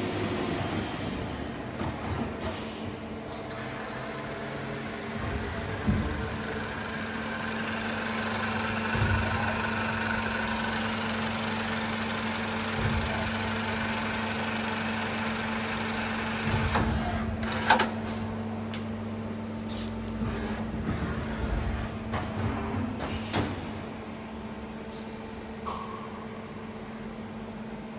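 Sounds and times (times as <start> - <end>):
lathe machine hum: 3.7 - 16.5.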